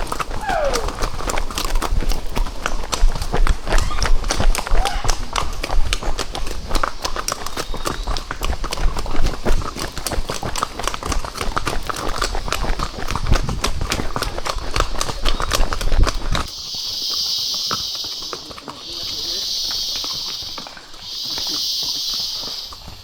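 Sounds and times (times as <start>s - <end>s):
horse hooves clip-clopping on trail: 0.0s - 23.0s.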